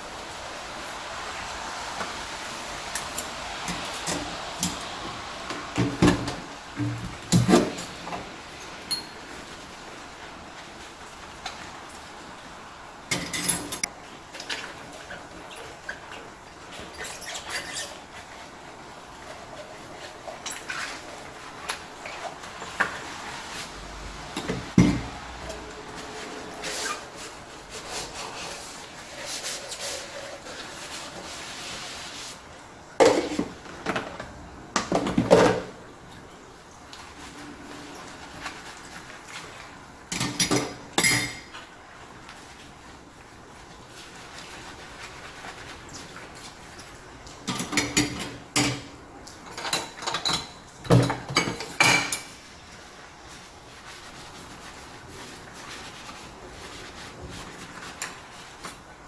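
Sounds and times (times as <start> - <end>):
soft steady hiss: 0.0 - 59.0
dishes and cutlery clinking: 13.1 - 13.9, 40.1 - 41.6, 47.4 - 52.4.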